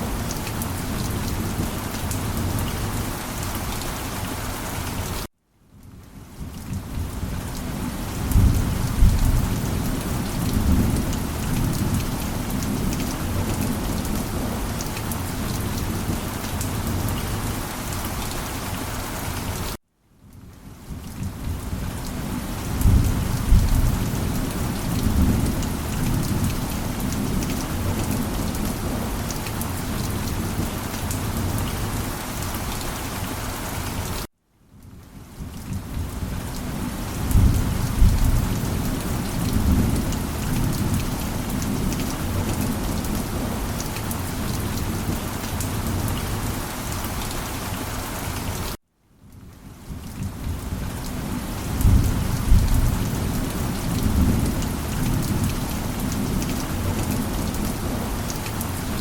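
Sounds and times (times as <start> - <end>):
heavy rain: 0.0 - 59.0
thunder rumbling: 8.2 - 14.3, 22.7 - 29.2, 37.1 - 43.5, 51.6 - 58.0.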